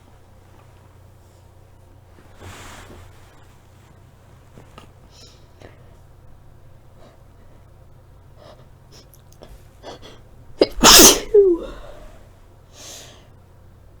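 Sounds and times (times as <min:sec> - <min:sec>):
soft intake of breath: 0:02.3 - 0:03.4, 0:10.8 - 0:13.3
soft sniffs: 0:02.4 - 0:03.4
woman sneezing: 0:10.6 - 0:12.1.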